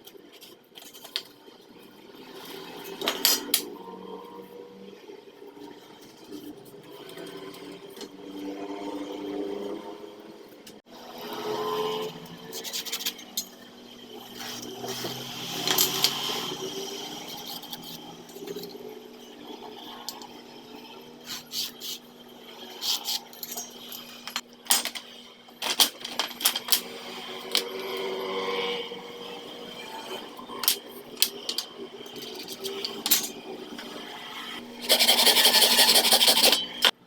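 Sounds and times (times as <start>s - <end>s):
rubbing: 34.8s - 36.9s.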